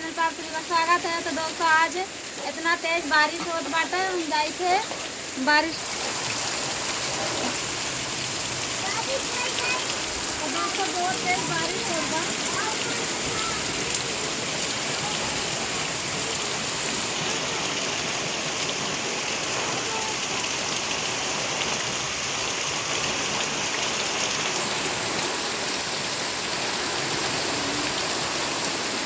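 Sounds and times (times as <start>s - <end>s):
heavy rain hiss: 0.0s - 29.0s.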